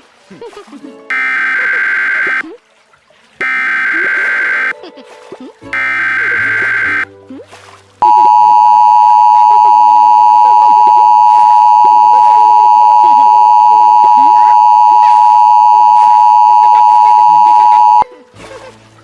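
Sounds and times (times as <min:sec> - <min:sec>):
steady two-tone alert beep: 0:01.1 - 0:02.4, 0:03.4 - 0:04.8, 0:05.8 - 0:07.1, 0:08.0 - 0:18.0.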